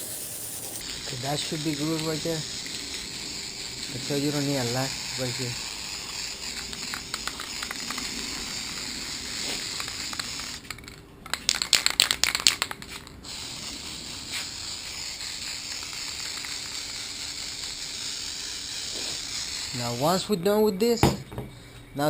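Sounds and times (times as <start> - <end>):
aerosol spray hissing: 0.0 - 10.8, 12.9 - 20.4
crackling rattling clicks: 6.5 - 8.9, 9.5 - 13.1.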